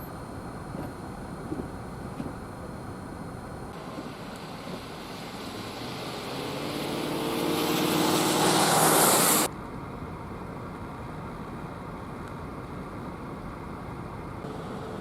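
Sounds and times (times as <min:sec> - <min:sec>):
vehicle engine hum: 0:00.0 - 0:15.0
tyre hiss on snowy road: 0:03.7 - 0:09.5.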